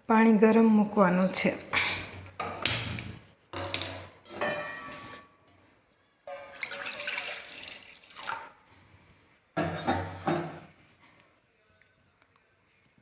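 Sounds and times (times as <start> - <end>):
water running into a pot: 6.3 - 8.6.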